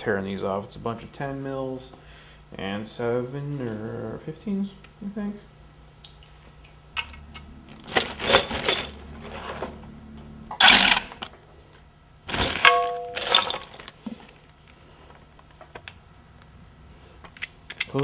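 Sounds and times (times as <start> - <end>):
metal engine parts clattering: 7.0 - 11.3, 12.3 - 14.3
short metallic ring: 12.6 - 13.8.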